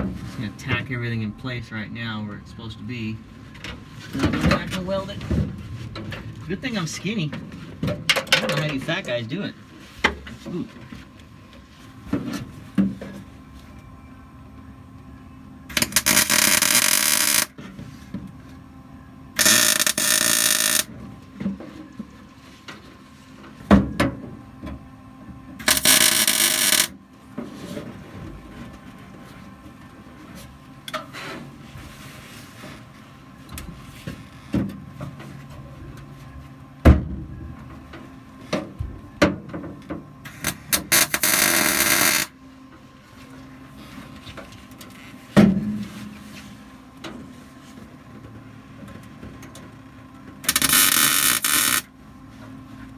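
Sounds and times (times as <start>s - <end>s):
welding bursts: 15.7s - 17.5s, 19.4s - 20.9s, 25.6s - 26.9s, 40.5s - 42.3s, 50.5s - 51.9s.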